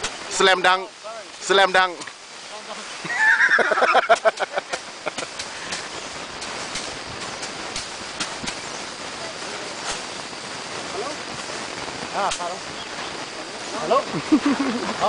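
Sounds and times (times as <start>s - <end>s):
rice sheaves beaten on surface: 3.8s - 8.8s.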